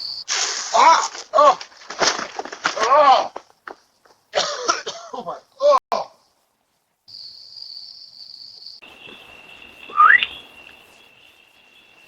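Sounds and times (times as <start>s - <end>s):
insect trilling: 7.1s - 12.0s
rising whistle-like chirp: 9.6s - 11.1s.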